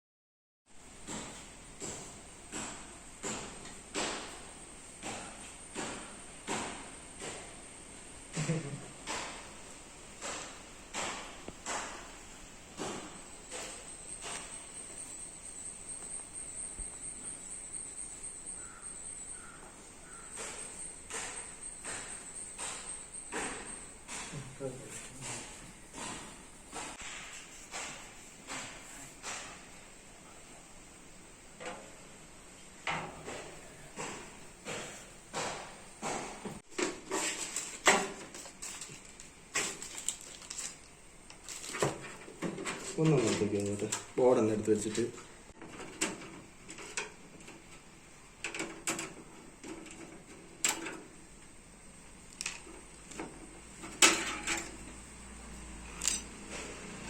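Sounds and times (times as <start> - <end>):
crickets chirring: 4.2 - 31.6
computer parts clicking and knocking: 10.2 - 12.2, 20.3 - 29.7.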